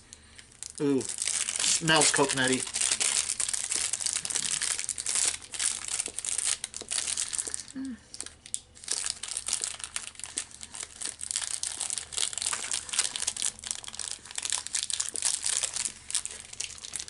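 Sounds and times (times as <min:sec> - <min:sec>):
plastic wrapper crinkling: 0:00.2 - 0:17.0.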